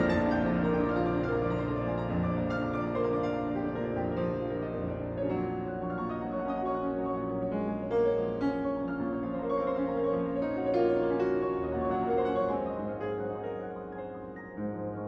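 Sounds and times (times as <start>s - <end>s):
solo piano classical piece: 0.0s - 15.0s.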